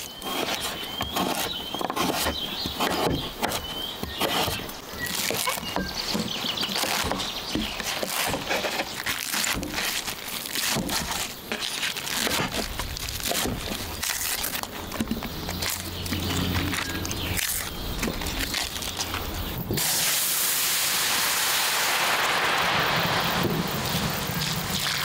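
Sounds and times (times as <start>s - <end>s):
fire crackling: 4.1s - 25.0s
meat sizzling: 19.8s - 25.0s.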